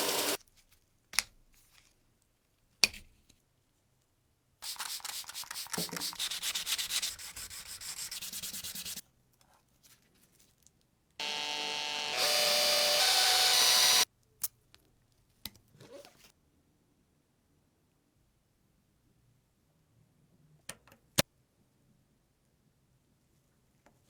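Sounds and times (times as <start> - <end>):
small motorised tool running: 0.0 - 0.4, 11.2 - 14.1
hand sanding strokes: 6.0 - 9.0.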